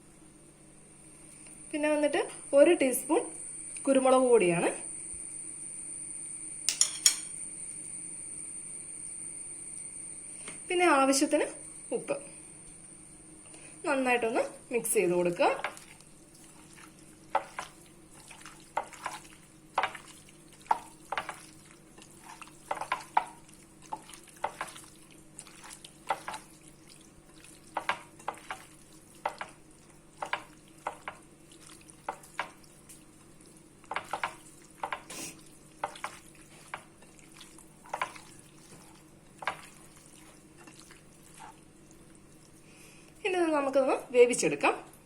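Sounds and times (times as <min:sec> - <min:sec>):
spoon scraping and tapping a bowl: 0:06.7 - 0:07.4, 0:19.8 - 0:20.1, 0:29.2 - 0:29.6, 0:30.2 - 0:31.2, 0:33.8 - 0:35.2.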